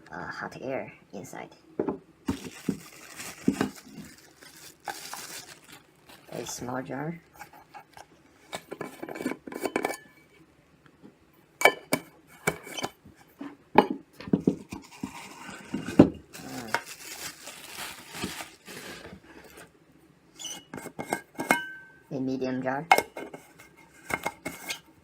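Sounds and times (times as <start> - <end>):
rustling: 2.3 - 8.7, 14.7 - 19.7.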